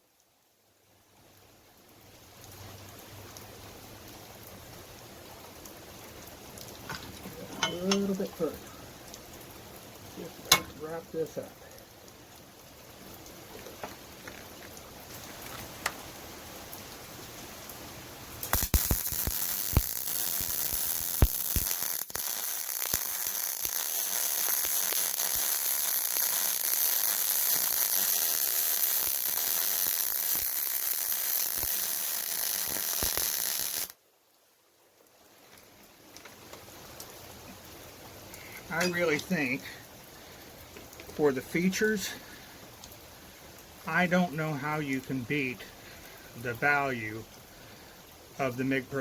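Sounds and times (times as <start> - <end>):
welding arc crackling: 18.4 - 34.0
welding arc pops: 18.4 - 34.0.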